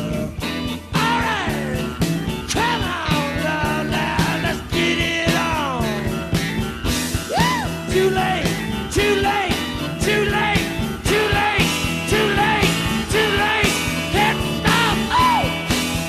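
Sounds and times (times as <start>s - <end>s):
person singing: 0.0s - 6.3s, 7.2s - 16.0s
drums steady beat: 0.0s - 16.0s
rock band playing: 0.0s - 16.0s
lead instrument line: 6.0s - 16.0s.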